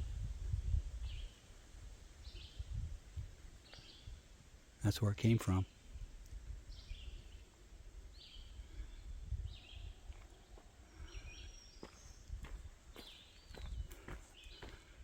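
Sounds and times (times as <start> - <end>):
birds chirping: 2.2 - 2.7, 3.6 - 15.0.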